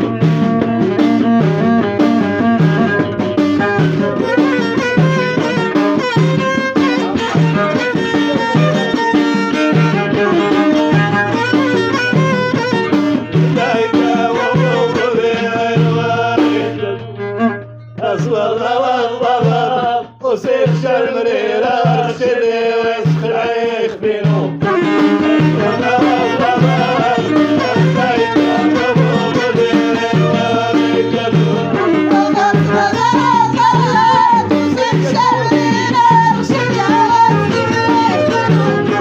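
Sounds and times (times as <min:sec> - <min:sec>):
wavering violin melody: 0:00.0 - 0:19.0, 0:24.5 - 0:39.0.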